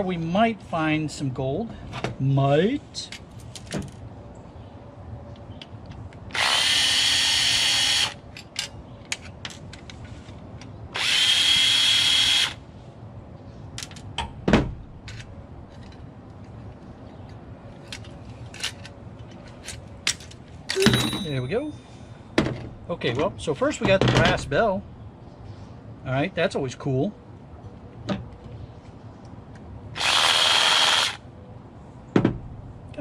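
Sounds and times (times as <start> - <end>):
drill whining: 6.4 - 8.2, 11.0 - 12.6, 30.0 - 31.2.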